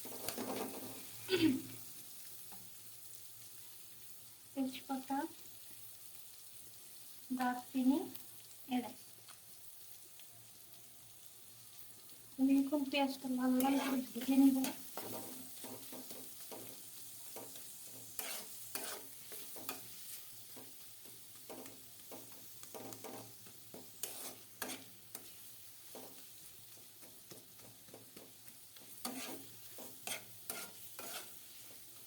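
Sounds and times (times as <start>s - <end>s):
stirring scrapes in pan: 0.0s - 1.2s, 13.4s - 32.0s
onion frying in oil: 0.0s - 32.0s.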